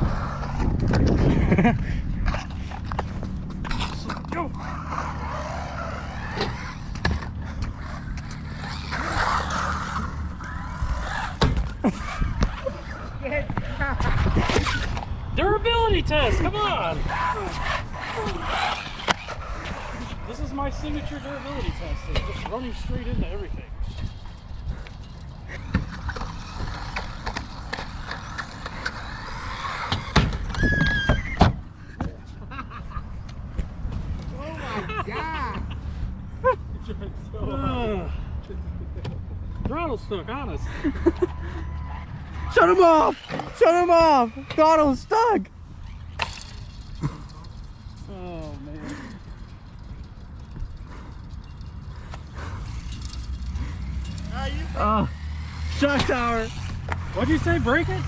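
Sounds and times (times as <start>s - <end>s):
electric motor whining and revving: 0.0s - 15.3s, 17.0s - 23.2s, 23.9s - 31.8s, 40.4s - 47.6s, 51.9s - 58.0s
wind rumble on microphone: 0.0s - 35.0s
rolling tyre noise: 0.0s - 58.0s
rc car slamming into obstacles: 25.6s - 31.6s, 46.2s - 47.4s.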